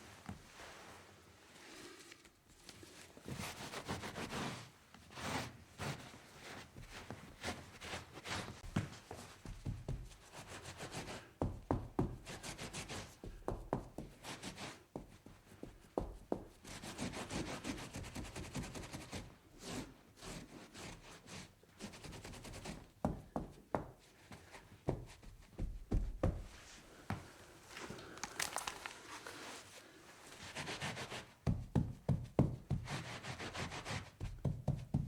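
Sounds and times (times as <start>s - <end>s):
cloth scrubbing hard surface: 26.5s - 31.4s.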